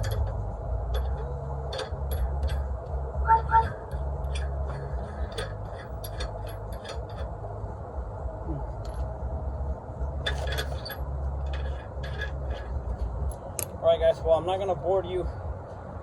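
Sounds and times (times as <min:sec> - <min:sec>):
metallic clinks of tools: 0:00.0 - 0:02.7, 0:03.5 - 0:07.3, 0:10.2 - 0:12.8
steady low hum: 0:00.0 - 0:16.0.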